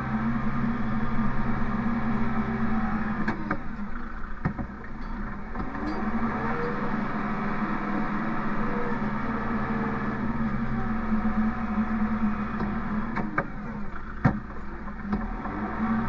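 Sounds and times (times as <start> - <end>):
tractor engine running: 0.0 - 16.0.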